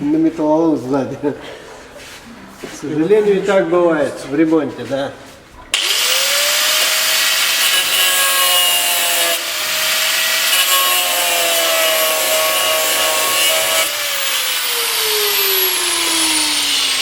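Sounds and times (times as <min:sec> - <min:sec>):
angle grinder cutting metal: 0:05.8 - 0:17.0
motor winding down whine: 0:14.0 - 0:17.0.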